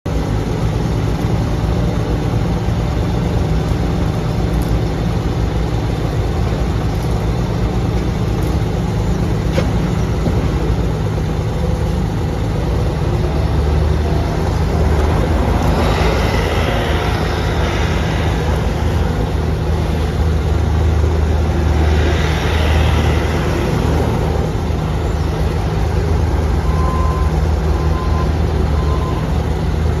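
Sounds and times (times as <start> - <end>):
diesel engine running: 0.1 - 30.0
hiss: 15.5 - 25.5.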